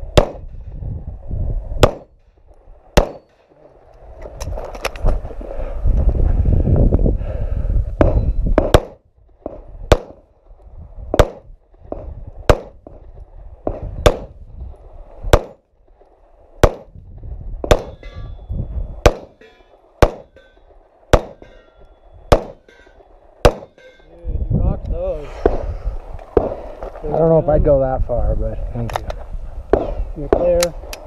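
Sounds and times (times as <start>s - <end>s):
pistol shots: 0.1s - 0.5s, 1.8s - 2.2s, 3.0s - 3.4s, 8.0s - 10.2s, 11.2s - 13.0s, 13.6s - 14.3s, 15.3s - 15.6s, 16.6s - 16.9s, 17.6s - 18.0s, 19.0s - 19.4s, 20.0s - 20.4s, 21.1s - 21.6s, 22.3s - 23.9s
metallic ringing of steel targets: 3.0s - 3.5s, 17.7s - 24.4s.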